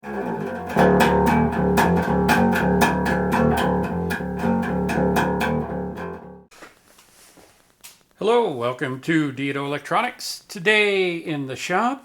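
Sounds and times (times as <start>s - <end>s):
band music with guitar and bass: 0.0s - 6.4s.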